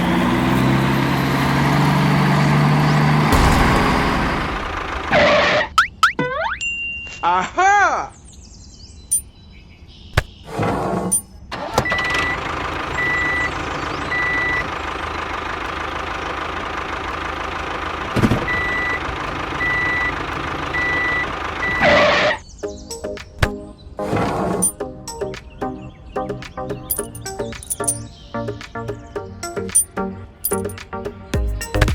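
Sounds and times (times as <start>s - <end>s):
vehicle engine running: 0.0s - 5.6s, 11.9s - 22.4s, 26.8s - 31.9s
reversing alarm beeping: 13.0s - 13.5s, 14.1s - 14.7s, 18.4s - 19.0s, 19.6s - 23.1s, 26.9s - 28.1s.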